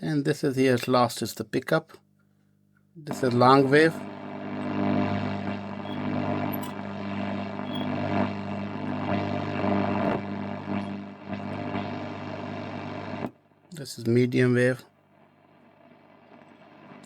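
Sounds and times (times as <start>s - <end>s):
radio hiss and static: 3.0s - 14.8s, 15.4s - 17.0s
radio loudspeaker hum: 3.0s - 14.8s, 15.8s - 17.0s.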